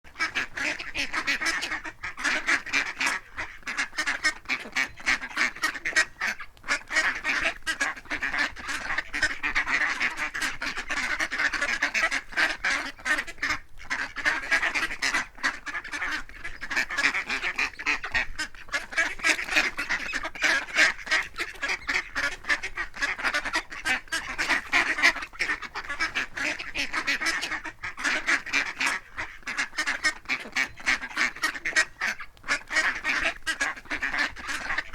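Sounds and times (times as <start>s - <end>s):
ducks quacking: 0.1s - 34.9s.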